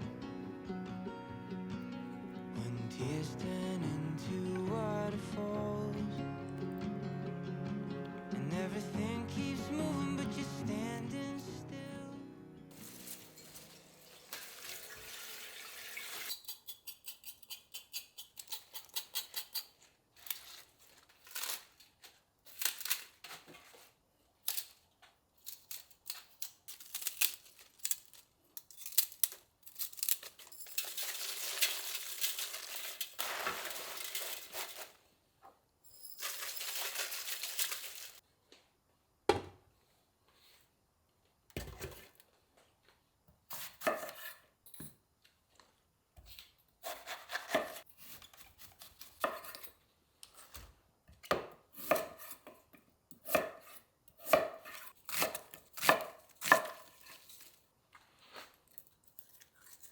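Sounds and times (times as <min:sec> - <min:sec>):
utensils and dishes clinking: 0:12.7 - 0:15.1, 0:36.0 - 0:38.2.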